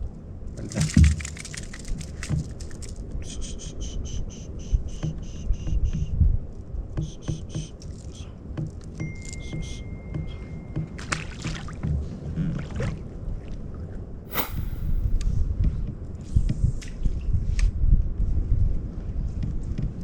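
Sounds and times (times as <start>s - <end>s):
sharp rushing noise: 14.3s - 15.2s.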